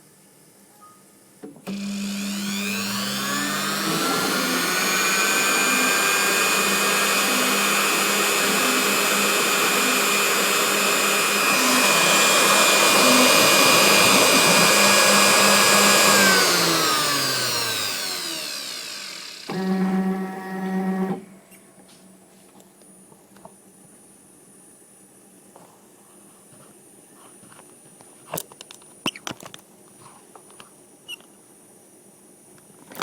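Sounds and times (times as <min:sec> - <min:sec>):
router motor whining: 0:01.6 - 0:21.6.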